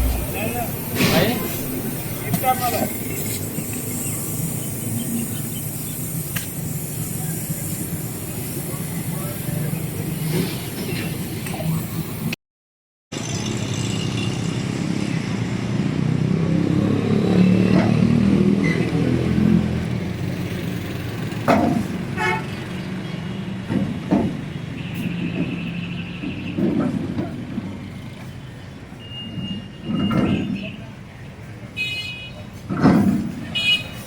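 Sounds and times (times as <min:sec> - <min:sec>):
vehicle engine running: 0:00.0 - 0:02.8.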